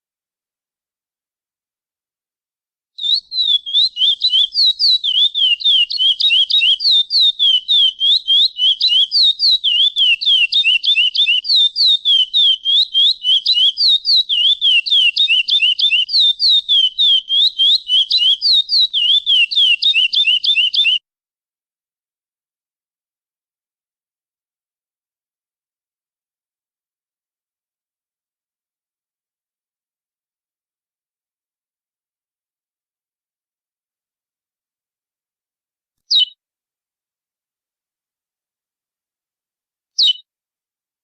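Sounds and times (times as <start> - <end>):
finch singing whistled notes: 3.0 - 21.0, 36.1 - 36.4, 40.0 - 40.2.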